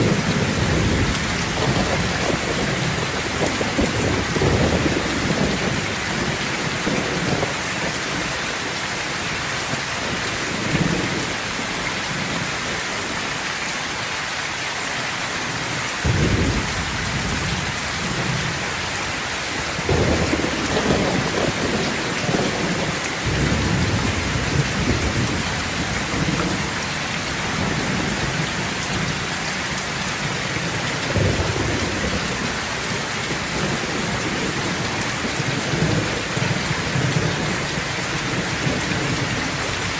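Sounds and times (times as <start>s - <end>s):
thunder rumbling: 0.0s - 8.8s, 16.0s - 39.9s
heavy rain hissing: 0.0s - 39.9s.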